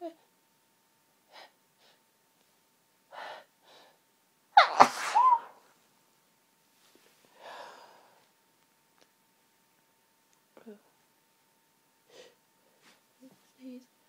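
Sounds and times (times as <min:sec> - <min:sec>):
woman sneezing: 0:04.6 - 0:05.6
woman gasping breaths: 0:07.3 - 0:08.2
breathy exhale: 0:07.4 - 0:08.2.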